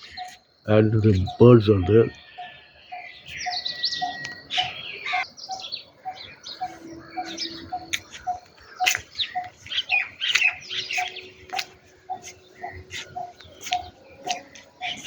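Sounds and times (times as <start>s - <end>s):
birds chirping in dawn chorus: 0.0s - 15.0s.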